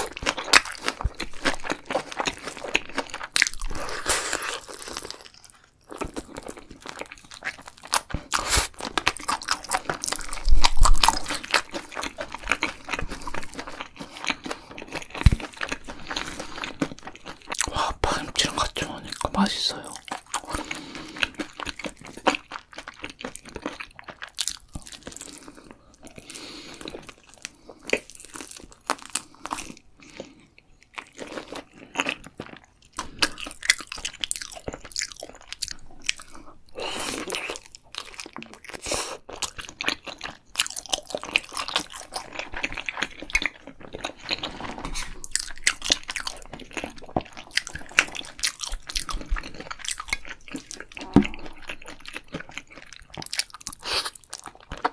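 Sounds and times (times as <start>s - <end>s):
chewing and crunching food: 0.0s - 54.9s
wet mouth sounds: 7.9s - 22.2s, 40.6s - 54.9s.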